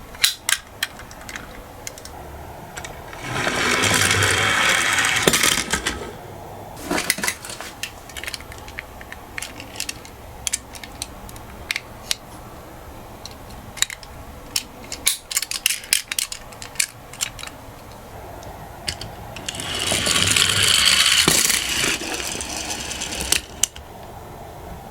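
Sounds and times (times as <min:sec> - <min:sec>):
toy cars clattering: 0:00.1 - 0:02.2, 0:02.8 - 0:06.2, 0:06.8 - 0:12.2, 0:13.2 - 0:18.0, 0:18.8 - 0:23.8
toy car wheels rolling down slope: 0:02.8 - 0:06.2, 0:18.8 - 0:23.8.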